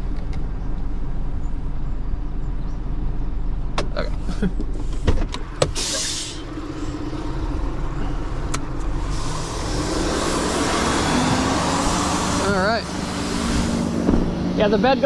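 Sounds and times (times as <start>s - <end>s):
truck engine idling: 0.0s - 15.0s
short hiss: 5.8s - 6.4s.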